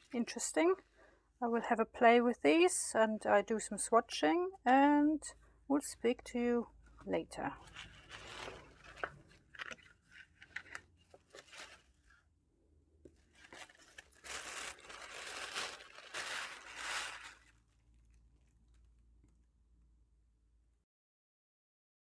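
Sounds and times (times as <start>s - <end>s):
packaging crinkling and rustling: 7.6s - 12.1s, 13.1s - 19.0s.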